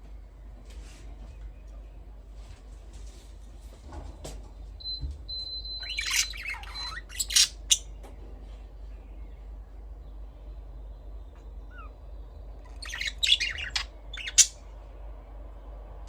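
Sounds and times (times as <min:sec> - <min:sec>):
budgerigars chirping and squawking: 0:05.8 - 0:08.0, 0:11.7 - 0:12.0, 0:12.6 - 0:14.6.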